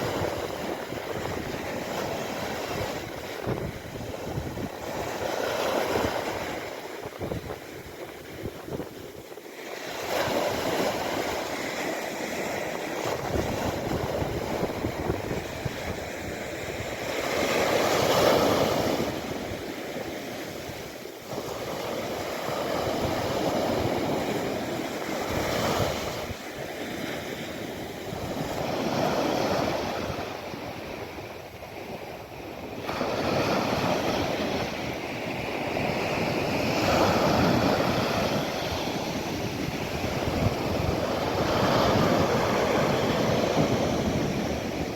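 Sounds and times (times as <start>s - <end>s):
waves breaking on shore: 0.0s - 44.9s.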